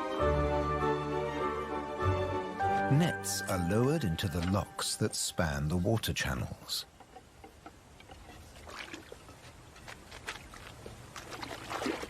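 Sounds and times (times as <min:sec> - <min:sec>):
faint watery background: 0:00.0 - 0:12.0
water splashing and dripping: 0:03.5 - 0:05.3, 0:07.9 - 0:12.0
loud water splash: 0:11.2 - 0:12.0.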